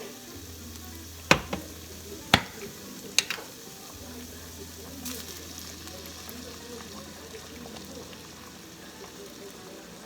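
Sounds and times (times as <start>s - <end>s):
meat sizzling in a frying pan: 0.0s - 10.0s
utensil knocking against pan: 1.3s - 3.4s.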